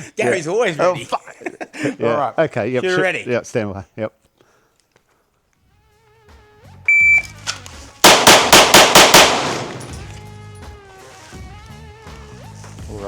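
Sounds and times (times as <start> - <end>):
background music: 5.6 - 13.0
shot timer beep: 6.9 - 7.3
pistol shots: 8.0 - 10.2.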